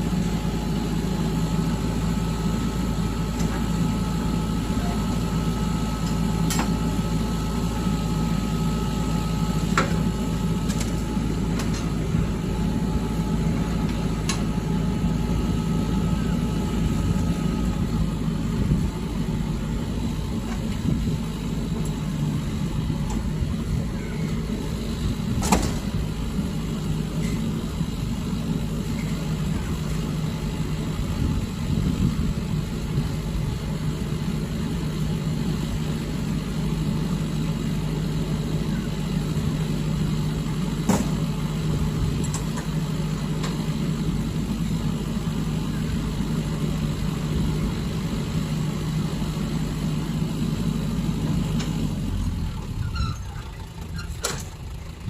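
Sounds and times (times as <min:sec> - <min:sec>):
lorry engine running: 0:00.0 - 0:55.0.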